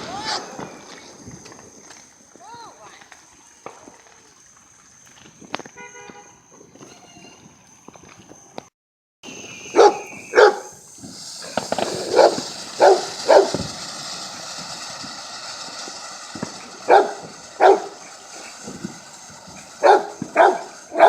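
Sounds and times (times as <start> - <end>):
steady hiss: 0.0 - 7.7, 9.2 - 21.0
dog barking: 9.8 - 10.7, 12.1 - 13.5, 16.9 - 17.9, 19.8 - 21.0.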